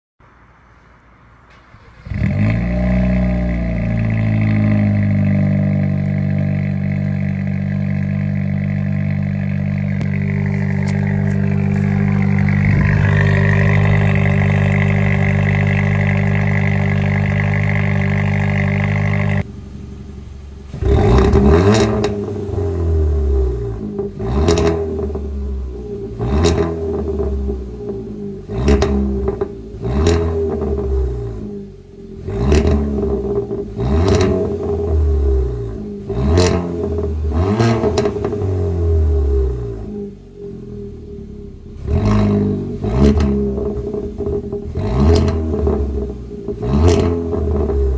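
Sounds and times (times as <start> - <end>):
car engine starting and idling: 0.2 - 47.9
engine revving: 1.5 - 19.6, 20.6 - 47.9
exhaust pops and crackles: 4.0 - 19.6, 20.7 - 22.4, 26.2 - 31.0, 36.3 - 38.4, 42.9 - 47.9.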